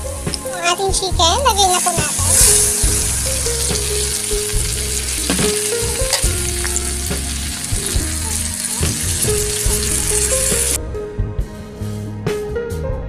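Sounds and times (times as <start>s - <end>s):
chicken sizzling in oil: 0.0s - 10.8s
utensil clicking against pan: 3.4s - 10.8s.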